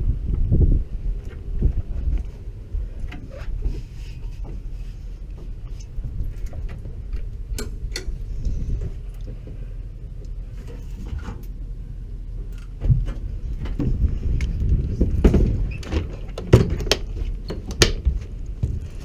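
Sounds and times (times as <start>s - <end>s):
low steady rumble: 0.0s - 19.0s
sharp clicks and knocks: 6.4s - 8.2s, 15.2s - 18.8s.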